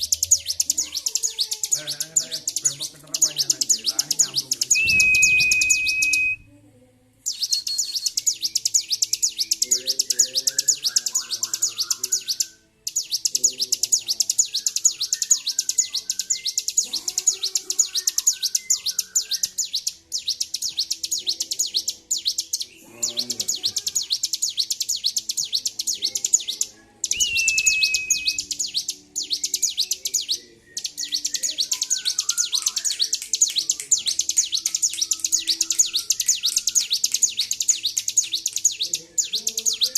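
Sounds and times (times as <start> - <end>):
bird singing rapid high notes: 0.0 - 6.5, 7.2 - 39.9
whistled note: 4.8 - 6.5, 27.1 - 28.4.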